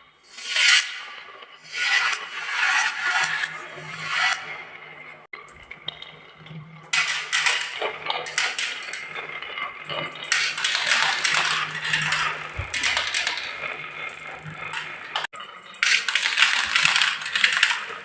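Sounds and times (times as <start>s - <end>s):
marbles rattling down wooden track: 7.0s - 18.0s.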